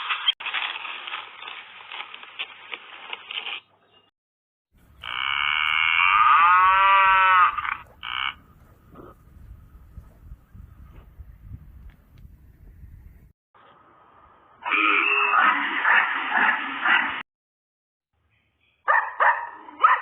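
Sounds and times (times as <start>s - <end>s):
rough rasping noise: 4.8s - 9.2s
cow mooing: 5.0s - 9.2s.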